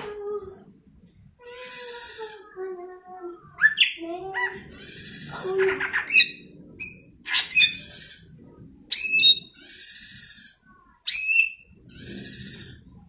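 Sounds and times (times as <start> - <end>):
bird singing whistled notes: 8.9 - 10.4, 11.1 - 12.8.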